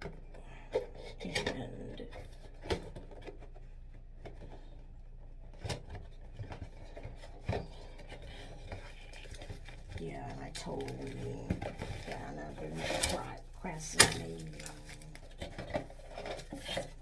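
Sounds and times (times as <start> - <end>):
packaging rubbing and scraping: 5.5 - 17.0.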